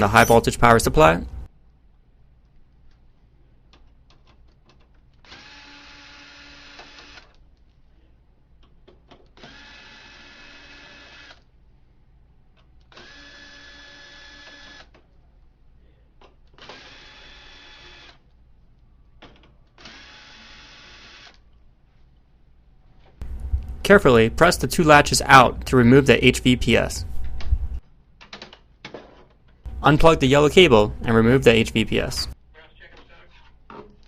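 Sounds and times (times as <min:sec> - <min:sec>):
electric screwdriver whirring: 0:05.2 - 0:07.3, 0:16.7 - 0:18.2, 0:19.8 - 0:21.4.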